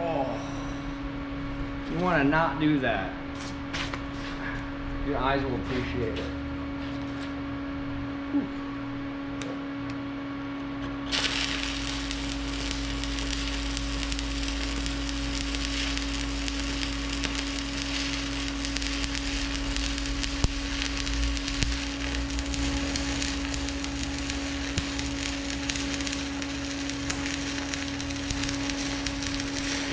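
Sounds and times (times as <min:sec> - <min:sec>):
machine hum: 0:00.0 - 0:29.9
welding arc crackling: 0:11.0 - 0:29.9.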